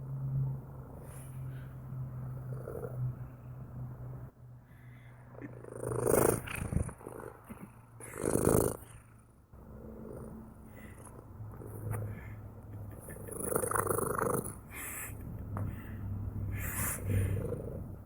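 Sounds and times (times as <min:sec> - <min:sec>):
cat purring: 0:02.2 - 0:03.4, 0:05.3 - 0:18.0.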